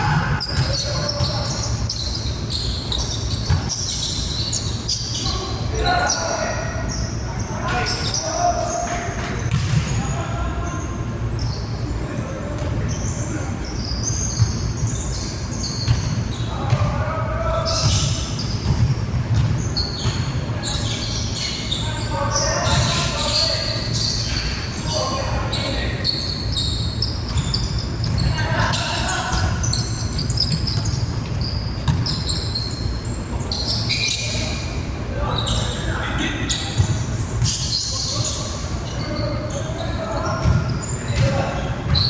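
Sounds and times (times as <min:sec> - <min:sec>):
sneakers squeaking on court: 0:00.0 - 0:42.0
voices in background: 0:00.0 - 0:42.0
basketball dribbling: 0:18.6 - 0:20.2, 0:30.2 - 0:32.4
shoe squeaks on hardwood: 0:29.7 - 0:34.5.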